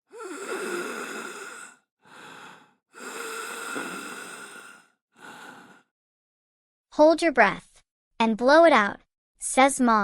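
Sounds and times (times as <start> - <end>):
person breathing deeply: 0.0 - 5.9.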